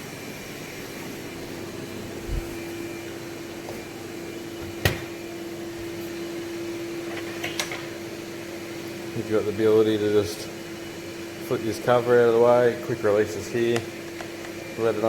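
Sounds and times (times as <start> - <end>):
low machine hum: 0.0 - 7.2.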